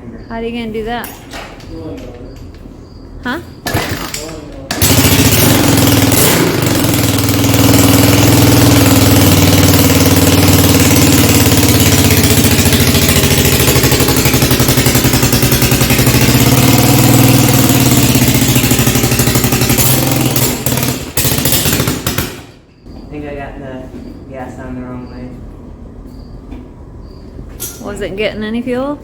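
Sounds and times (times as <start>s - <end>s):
atv engine running and dying: 2.4s - 23.0s.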